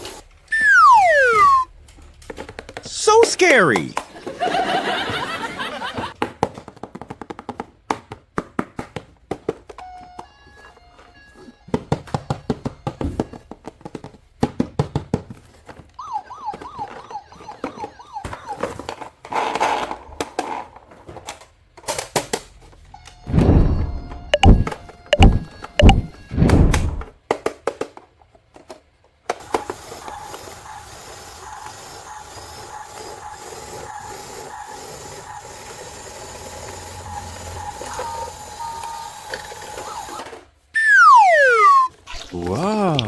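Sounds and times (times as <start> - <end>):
electronic toy sounds: 0.5 - 1.7, 16.0 - 19.0, 23.2 - 26.4, 29.4 - 43.0
warbling siren-like tone: 0.5 - 1.7, 23.3 - 26.4, 30.0 - 40.2, 40.8 - 42.0
plastic toys clicking and knocking: 0.5 - 4.5, 6.1 - 22.7, 27.2 - 43.0.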